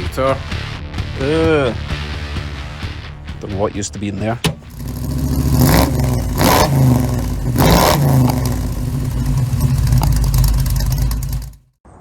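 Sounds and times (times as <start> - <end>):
car engine revving: 4.5 - 11.6.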